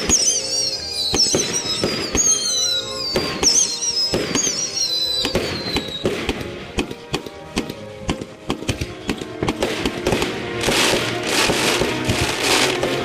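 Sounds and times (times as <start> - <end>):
whistles falling in pitch: 0.0 - 6.1
background music: 0.0 - 13.0
fireworks bangs: 0.0 - 13.0.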